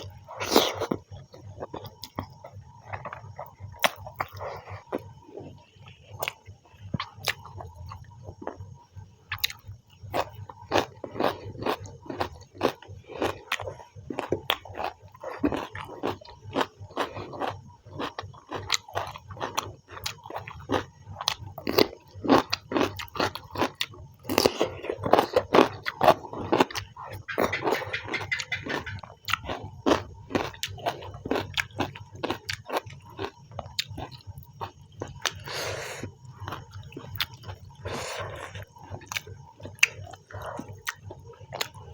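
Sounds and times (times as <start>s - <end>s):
person chewing food: 0.0s - 8.6s, 9.3s - 41.9s
mouth clicks and smacks: 27.1s - 29.5s.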